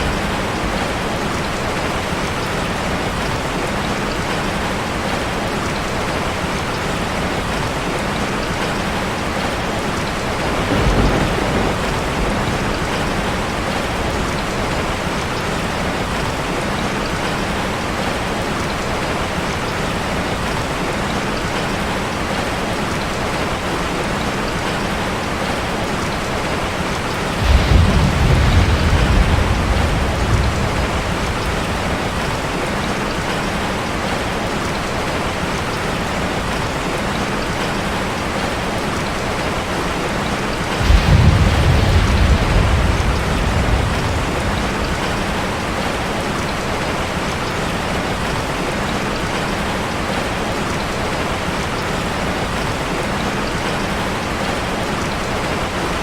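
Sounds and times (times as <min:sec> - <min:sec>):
rain falling on a street: 0:00.0 - 0:56.0.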